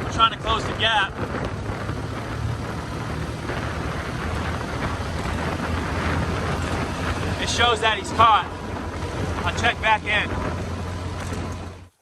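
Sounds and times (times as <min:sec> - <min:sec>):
vehicle engine humming: 0:00.0 - 0:12.0
wind buffeting microphone: 0:00.0 - 0:12.0.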